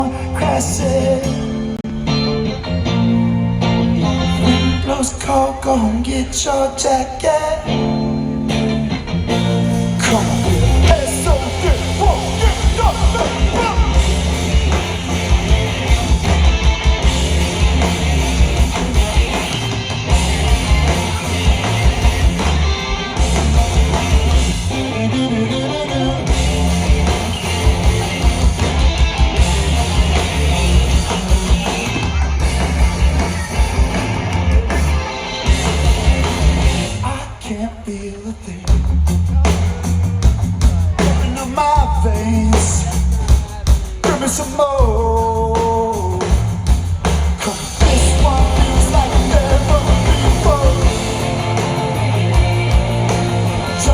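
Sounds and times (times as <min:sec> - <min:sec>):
rock band playing live: 0:00.0 - 0:53.9
person singing: 0:47.4 - 0:53.9.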